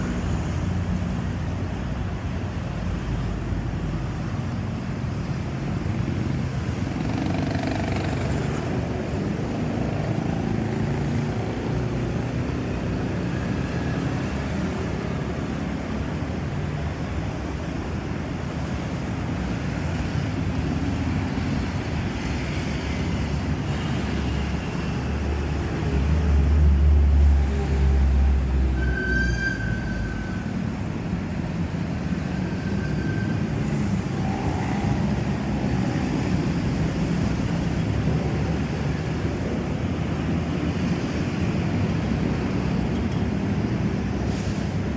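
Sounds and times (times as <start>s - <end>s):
vehicle engine and tyre noise: 0.0s - 44.9s.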